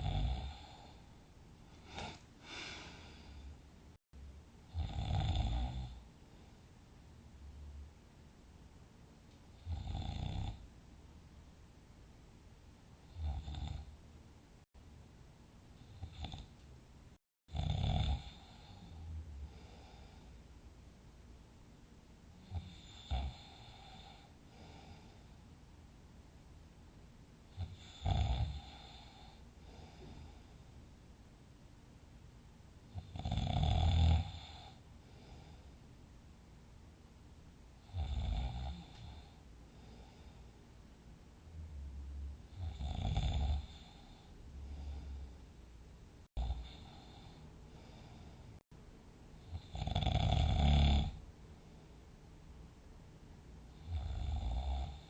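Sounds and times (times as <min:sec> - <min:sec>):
person snoring: 0:00.0 - 0:01.1, 0:04.7 - 0:06.0, 0:09.6 - 0:10.6, 0:13.1 - 0:13.9, 0:15.8 - 0:16.5, 0:17.5 - 0:20.3, 0:22.4 - 0:25.2, 0:27.6 - 0:30.4, 0:32.9 - 0:35.6, 0:37.8 - 0:40.4, 0:42.5 - 0:45.4, 0:46.4 - 0:48.4, 0:49.4 - 0:51.2, 0:53.7 - 0:55.0
soft rumbling breaths: 0:18.3 - 0:21.0, 0:23.2 - 0:25.7, 0:28.6 - 0:31.2, 0:34.6 - 0:36.3, 0:38.7 - 0:49.7.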